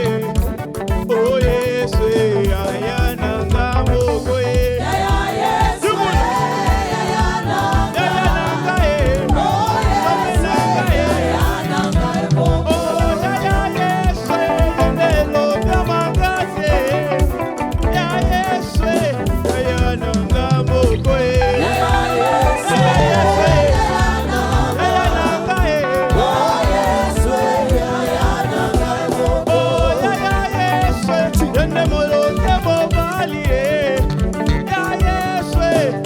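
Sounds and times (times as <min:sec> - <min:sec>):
bass: 0:00.0 - 0:36.0
drums: 0:00.0 - 0:36.0
upbeat gospel praise music: 0:00.0 - 0:36.0.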